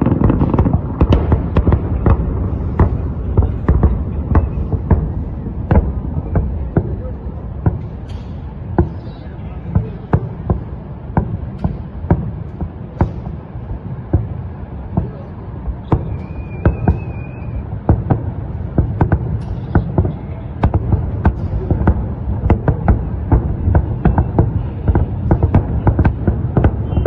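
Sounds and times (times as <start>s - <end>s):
firework shells bursting: 0.0s - 6.7s
high firework whistle: 15.8s - 17.9s.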